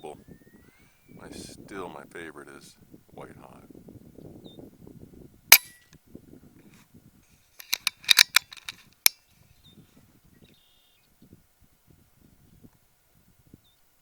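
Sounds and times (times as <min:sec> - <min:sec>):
air rifle shot: 0:05.6 - 0:05.8.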